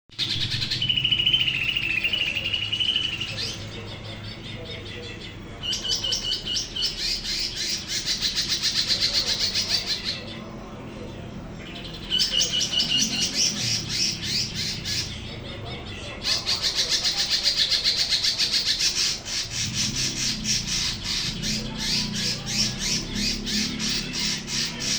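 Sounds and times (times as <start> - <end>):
bird singing whistles and chatter: 0.2 - 10.4, 11.7 - 24.9.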